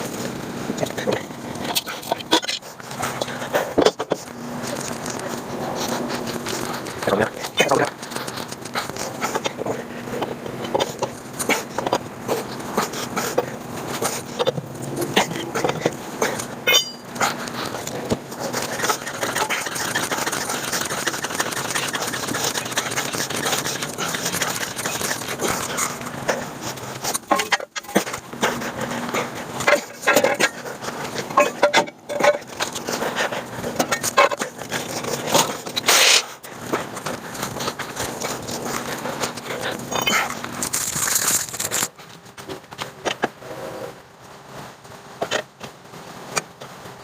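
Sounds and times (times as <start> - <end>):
metal tools clicking and scraping: 15.6 - 26.0, 37.0 - 41.9.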